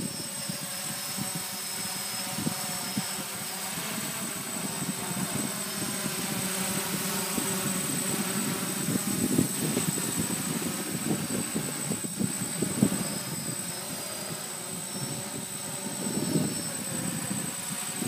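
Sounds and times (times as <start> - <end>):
drone motors and propellers: 0.0 - 18.0
wind buffeting microphone: 0.0 - 18.0.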